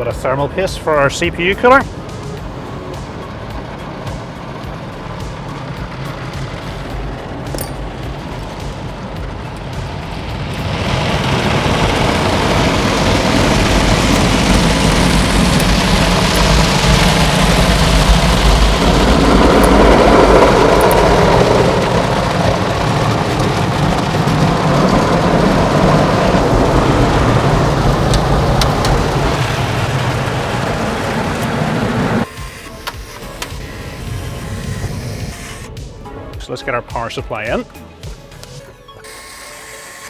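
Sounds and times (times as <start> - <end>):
low machine rumble: 1.8 - 32.3.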